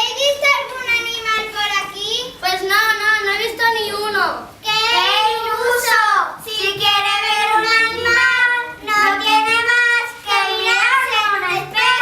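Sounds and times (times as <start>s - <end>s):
children singing: 4.8s - 12.0s.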